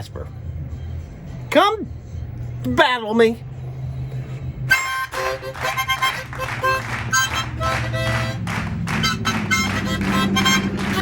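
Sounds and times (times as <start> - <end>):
harmonica chords in choppy puffs: 4.6 - 11.0.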